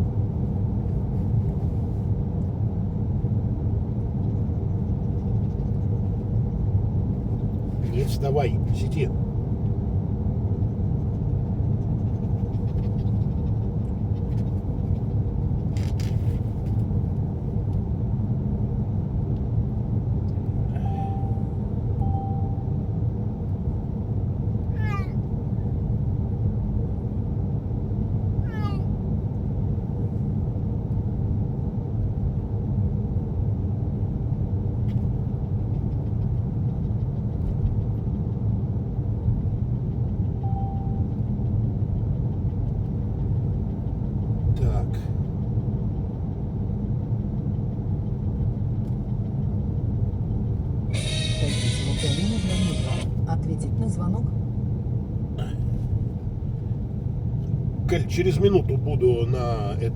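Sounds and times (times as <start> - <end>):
car road and engine rumble: 0.0 - 59.9
cat meowing: 24.7 - 25.2, 28.4 - 28.9, 50.9 - 53.2.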